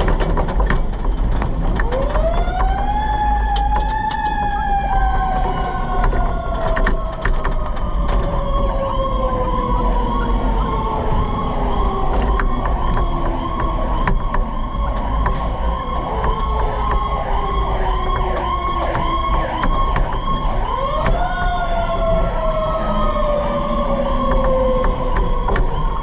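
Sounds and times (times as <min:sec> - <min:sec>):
truck engine and road rumble: 0:00.0 - 0:26.0
siren winding down and rising: 0:01.8 - 0:26.0
siren yelping rapidly: 0:08.4 - 0:26.0.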